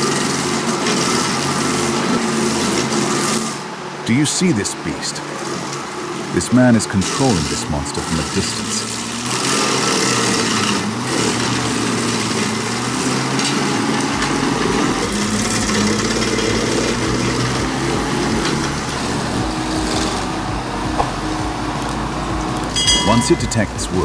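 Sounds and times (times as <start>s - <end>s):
machine engine running: 0.0s - 24.0s.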